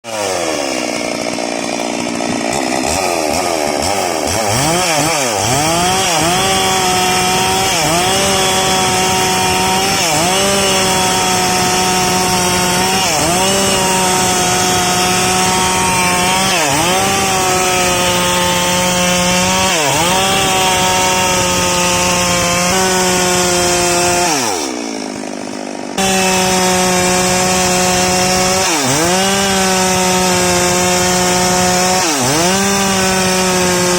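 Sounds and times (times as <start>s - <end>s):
chainsaw cutting wood: 0.0s - 33.9s.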